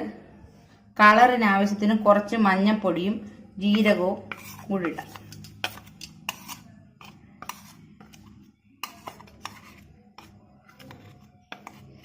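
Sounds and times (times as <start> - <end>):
spoon clinking against bowls: 3.8 - 7.7, 8.8 - 12.0.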